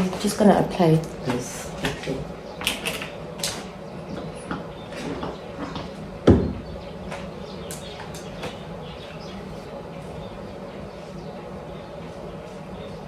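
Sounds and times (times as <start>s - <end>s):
dull thump: 6.2s - 6.7s.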